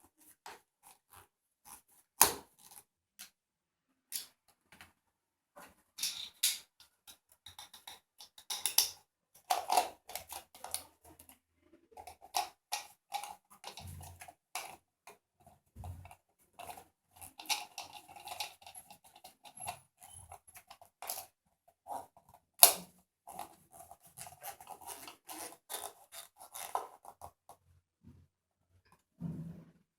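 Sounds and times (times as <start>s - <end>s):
plastic parts clicking: 7.4s - 10.9s.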